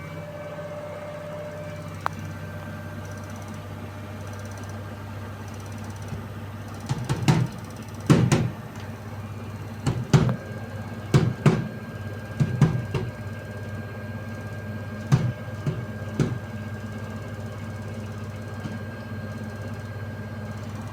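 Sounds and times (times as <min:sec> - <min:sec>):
washing machine spin hum: 0:00.0 - 0:20.9
washing machine knocking: 0:06.1 - 0:08.7, 0:09.8 - 0:13.4, 0:14.9 - 0:17.2, 0:18.4 - 0:19.4.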